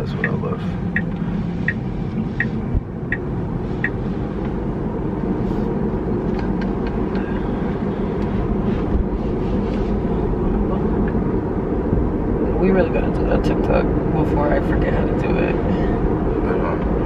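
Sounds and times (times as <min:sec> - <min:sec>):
car engine and road rumble: 0:00.0 - 0:17.0
light ticking: 0:00.2 - 0:04.6.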